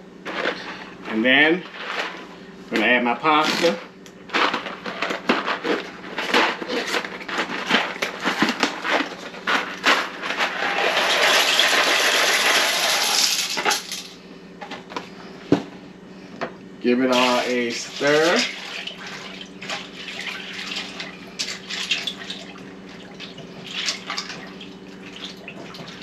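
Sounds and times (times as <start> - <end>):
pasta pouring rush: 5.6 - 13.6
dry pasta rattling into pot: 9.8 - 14.0.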